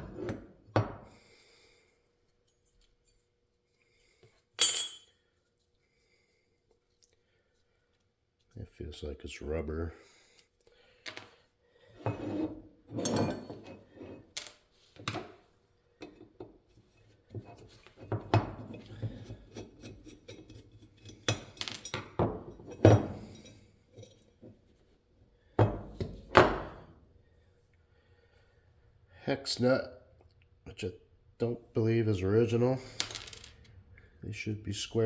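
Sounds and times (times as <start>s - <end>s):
small metal parts clinking: 20.2s - 24.2s, 32.8s - 33.7s.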